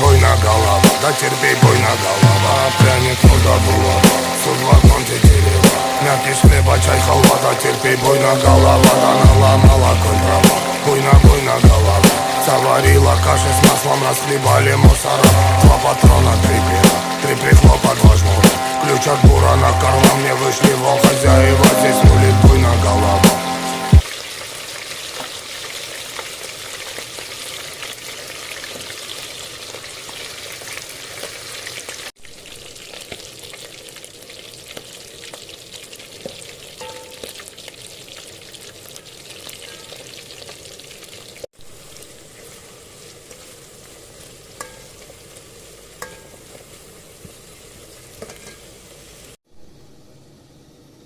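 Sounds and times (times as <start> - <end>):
food sizzling in a pan: 0.0 - 19.5, 24.0 - 49.4.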